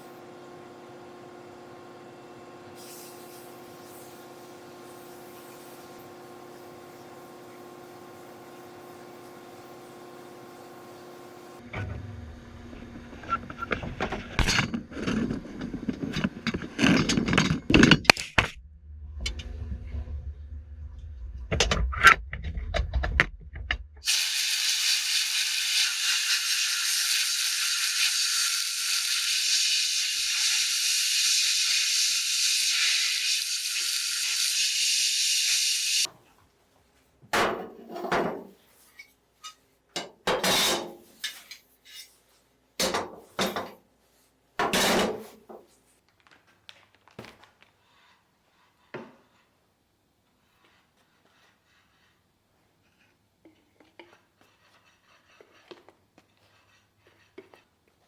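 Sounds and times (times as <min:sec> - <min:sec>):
sandblaster hissing: 0:02.8 - 0:08.2, 0:24.1 - 0:36.1.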